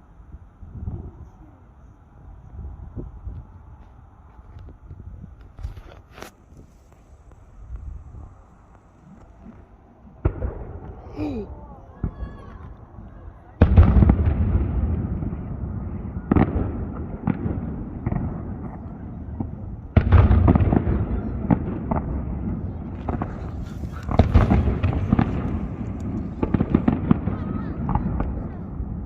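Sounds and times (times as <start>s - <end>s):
firework bangs and crackles: 0.0s - 29.0s
sharp firework reports: 13.6s - 29.0s.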